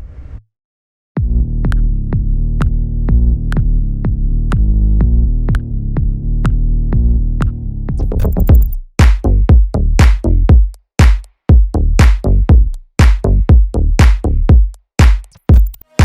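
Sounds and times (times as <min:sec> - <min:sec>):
heavy bass: 0:01.2 - 0:16.0
drum machine beat: 0:07.9 - 0:16.0
electronic dance music: 0:08.0 - 0:09.2, 0:11.0 - 0:11.2, 0:14.0 - 0:16.0.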